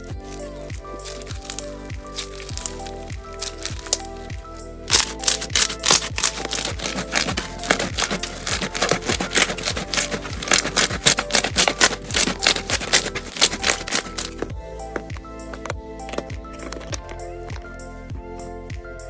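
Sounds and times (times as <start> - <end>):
soft background music: 0.0 - 19.0
slime crackling and popping: 0.7 - 14.5.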